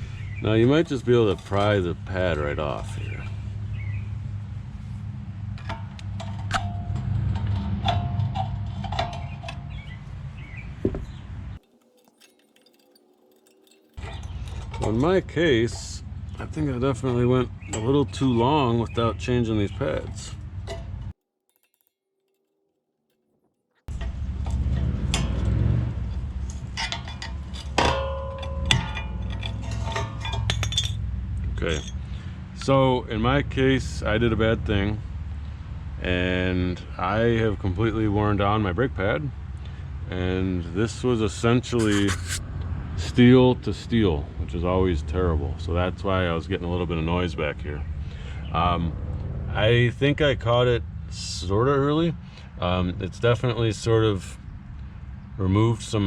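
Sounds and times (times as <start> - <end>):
metal brake pads clinking: 5.5 - 18.3, 23.9 - 32.2
sharp metallic clinks: 11.5 - 16.5, 20.7 - 23.3.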